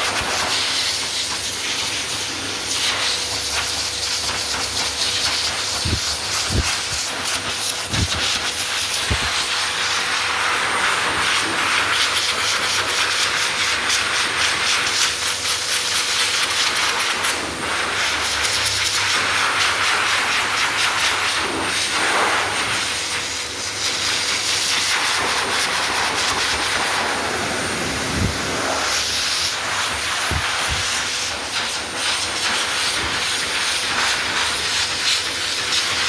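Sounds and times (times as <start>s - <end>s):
blow dryer blowing air: 0.0s - 36.0s.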